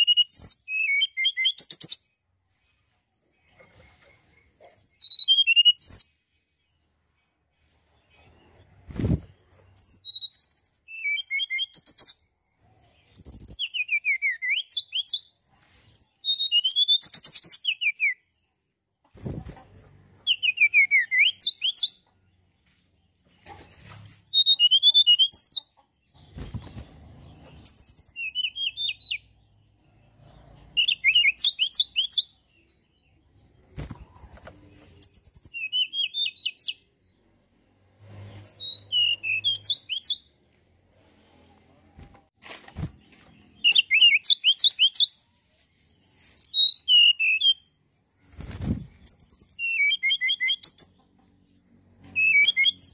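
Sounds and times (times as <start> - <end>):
bird twittering with trills: 3.5 - 7.0, 8.3 - 18.4, 19.2 - 22.3, 23.4 - 37.1, 38.3 - 40.3, 42.7 - 45.2, 46.2 - 52.9.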